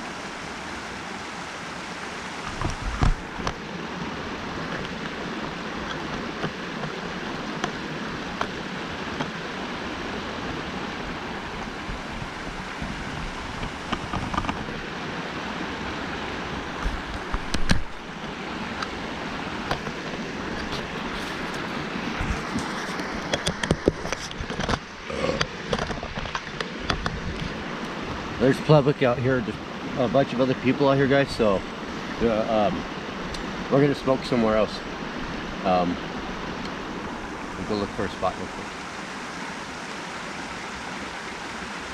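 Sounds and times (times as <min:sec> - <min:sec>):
creek water rushing: 0:00.0 - 0:41.9
sharp clicks and knocks: 0:13.6 - 0:14.6, 0:16.8 - 0:18.9, 0:22.2 - 0:27.5.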